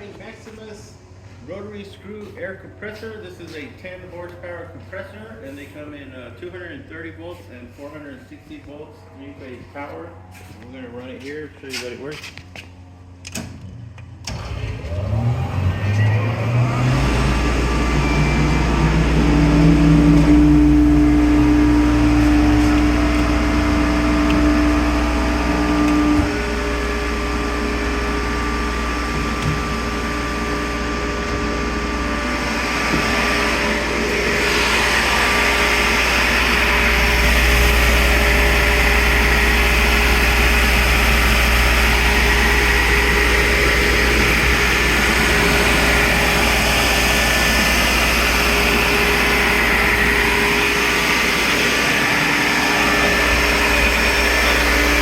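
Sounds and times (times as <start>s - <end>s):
air compressor running: 12.2s - 55.0s.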